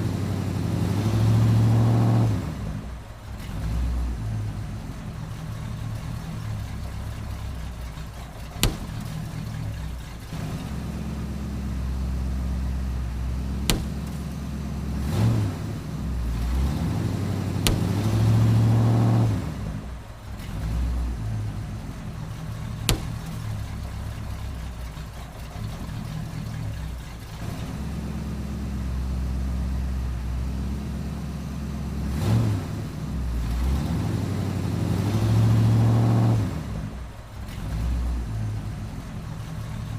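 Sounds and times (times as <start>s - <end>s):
car engine running: 0.0s - 39.9s
balloons bursting: 8.6s - 9.3s, 13.5s - 15.0s, 17.4s - 18.6s.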